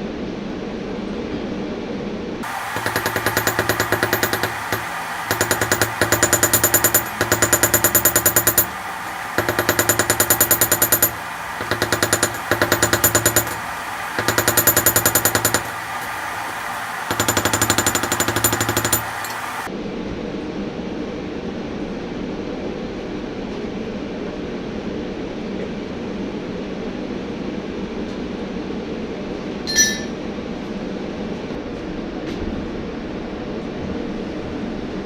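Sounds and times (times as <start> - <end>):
rapid hammering on steel: 2.4 - 19.7.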